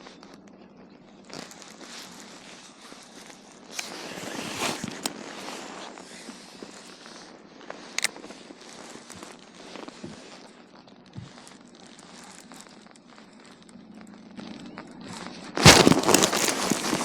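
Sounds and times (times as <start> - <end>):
gear handling clicks and rustling: 1.2 - 13.8.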